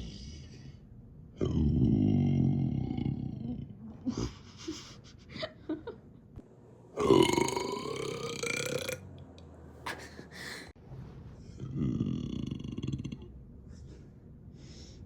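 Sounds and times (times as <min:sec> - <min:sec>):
person burping: 0:07.0 - 0:09.1.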